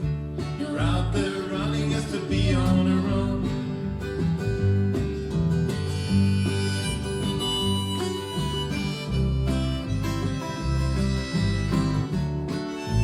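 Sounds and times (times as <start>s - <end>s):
acoustic guitar: 0.0s - 13.0s
bass line: 0.0s - 13.0s
harmonica solo: 5.8s - 13.0s.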